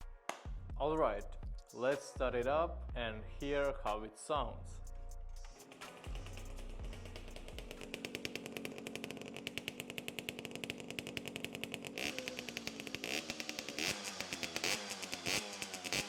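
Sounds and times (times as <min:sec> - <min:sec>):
small engine idling and revving: 0:05.4 - 0:16.0.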